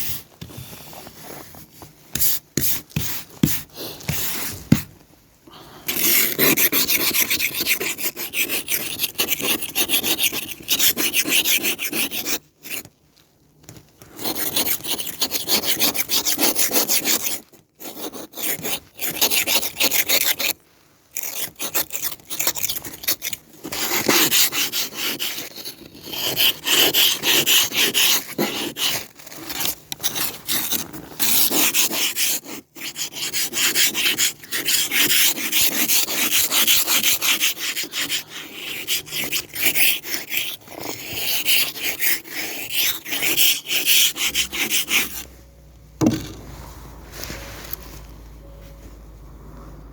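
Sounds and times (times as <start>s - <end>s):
ice scraper rasping on glass: 5.9s - 12.8s, 14.2s - 20.5s, 21.2s - 45.3s.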